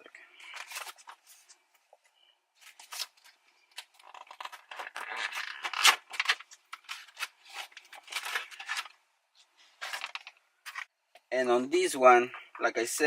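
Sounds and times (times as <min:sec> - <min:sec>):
packaging rustling and crinkling: 0:02.6 - 0:09.0, 0:09.6 - 0:10.9.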